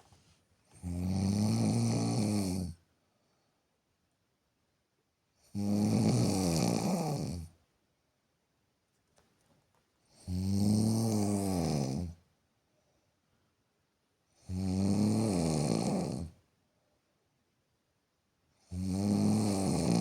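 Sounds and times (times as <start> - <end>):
quiet breaths: 0.0 - 3.9, 9.1 - 17.3, 18.5 - 20.0
person snoring: 0.7 - 2.8, 5.5 - 7.5, 10.2 - 12.2, 14.4 - 16.4, 18.6 - 20.0.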